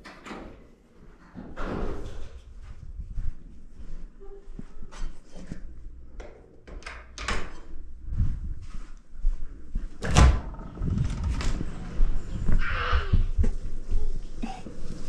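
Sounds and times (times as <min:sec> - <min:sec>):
knocks and clatters: 0:10.0 - 0:12.0.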